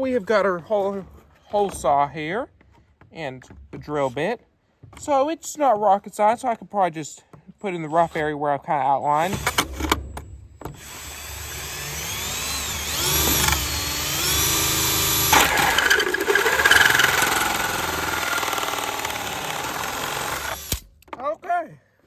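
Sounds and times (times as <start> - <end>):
electric drill cutting plastic: 9.2 - 9.7, 10.8 - 21.0.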